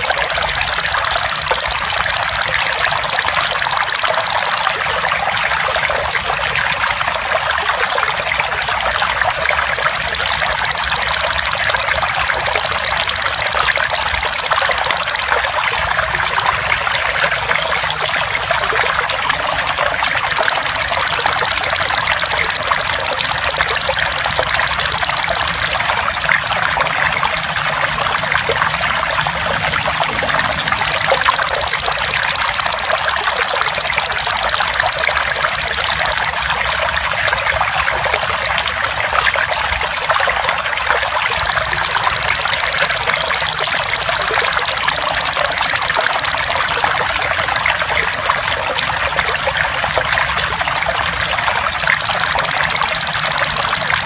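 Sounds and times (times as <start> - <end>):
trickling water: 0.0 - 54.0.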